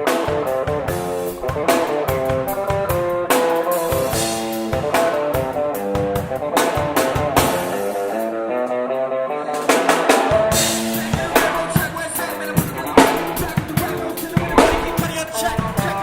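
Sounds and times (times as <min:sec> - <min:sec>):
rock guitar riff: 0:00.0 - 0:16.0
kick and snare drum hits: 0:14.4 - 0:16.0.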